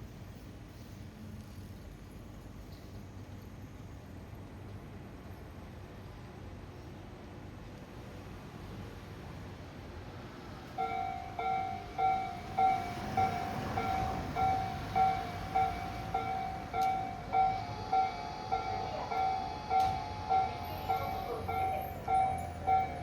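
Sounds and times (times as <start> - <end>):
higher-pitched crossing alarm: 10.8 - 23.0
level crossing alarm dinging: 10.8 - 23.0.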